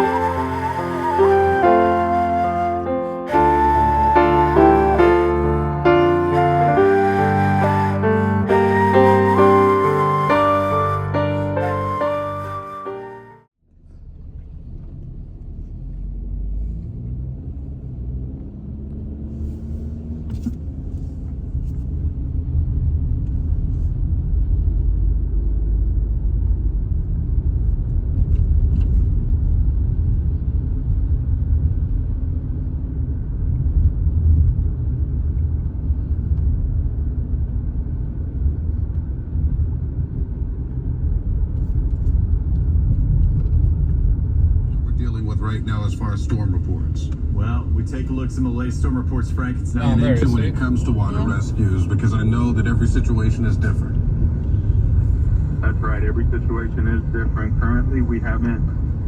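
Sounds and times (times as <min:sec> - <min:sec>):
car engine accelerating: 0:00.0 - 0:28.7
road rumble: 0:00.0 - 0:59.0.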